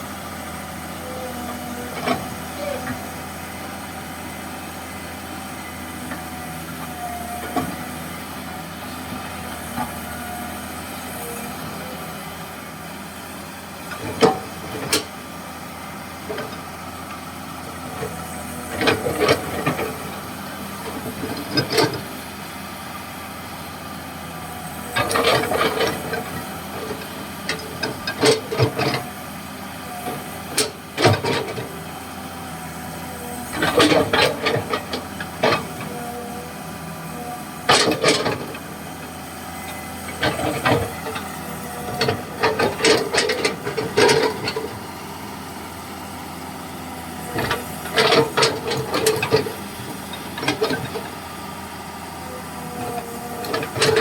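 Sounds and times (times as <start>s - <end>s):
excavator running: 0.0s - 54.0s.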